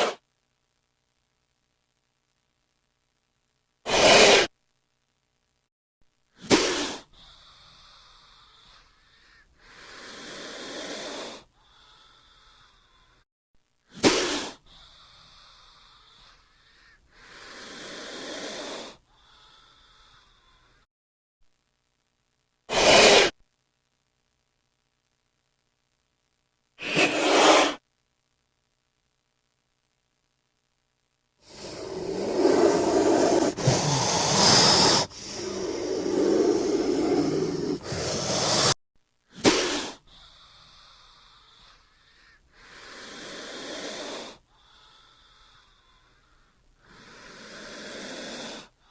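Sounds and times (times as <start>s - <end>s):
cobra hissing: 3.9s - 4.5s, 6.4s - 13.2s, 13.9s - 20.9s, 22.7s - 23.4s, 26.8s - 27.8s, 31.4s - 48.9s.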